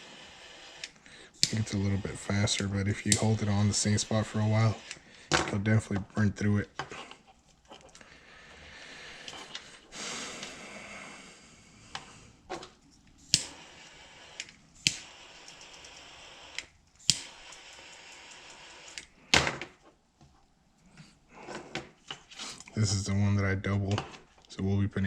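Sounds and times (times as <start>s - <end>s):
handheld torch hissing: 0.0s - 5.4s, 8.2s - 12.5s, 13.2s - 19.2s
sharp clicks: 2.5s - 3.6s, 14.4s - 19.1s.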